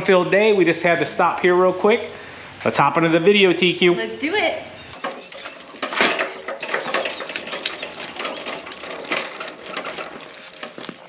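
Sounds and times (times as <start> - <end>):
clattering and crackling knocks: 4.9 - 11.0.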